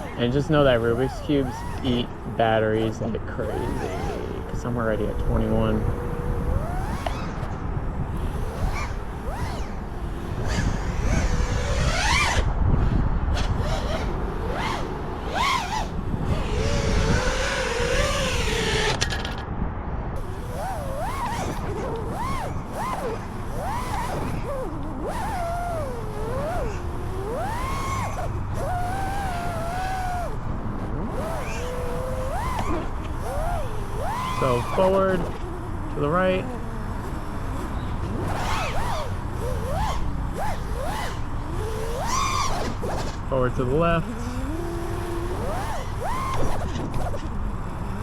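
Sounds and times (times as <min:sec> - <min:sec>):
drone motors whining: 0:00.0 - 0:48.0.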